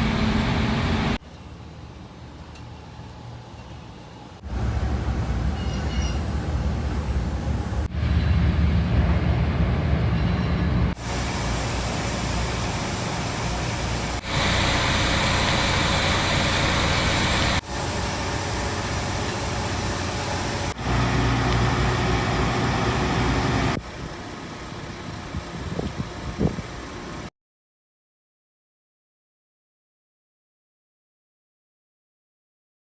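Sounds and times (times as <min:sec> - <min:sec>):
machinery hum: 0:00.0 - 0:27.3
rushing air hiss: 0:10.9 - 0:27.1.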